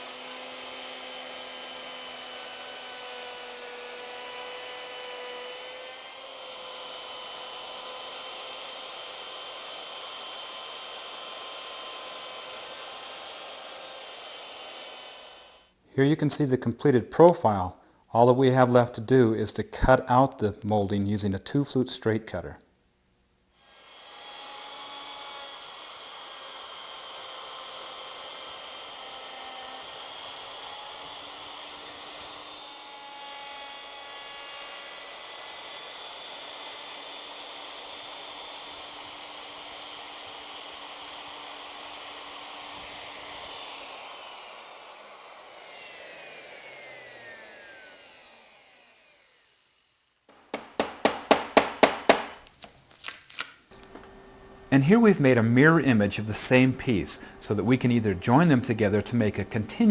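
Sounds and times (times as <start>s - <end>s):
router spinning down whine: 0.0s - 15.7s, 23.6s - 50.6s
router cutting wood: 0.0s - 15.8s, 23.6s - 52.4s, 53.7s - 59.9s.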